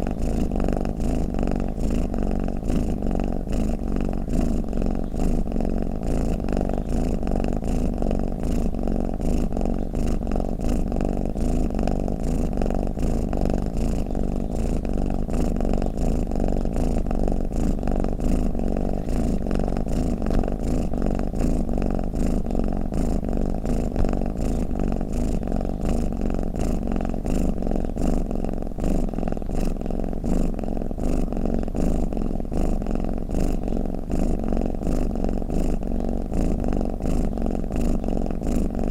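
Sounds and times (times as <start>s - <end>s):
cat purring: 0.0s - 38.9s.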